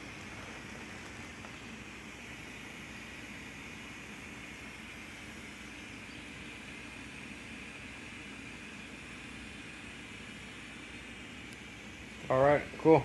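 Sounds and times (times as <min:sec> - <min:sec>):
background hum with hiss: 0:00.0 - 0:13.0.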